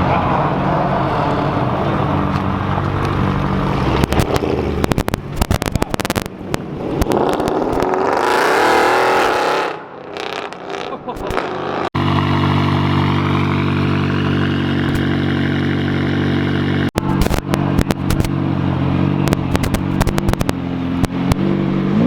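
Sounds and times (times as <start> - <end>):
car engine rumbling: 0.0 - 9.1, 9.8 - 22.0
sharp crackles and pops: 2.3 - 7.9, 16.9 - 18.4, 19.2 - 21.4.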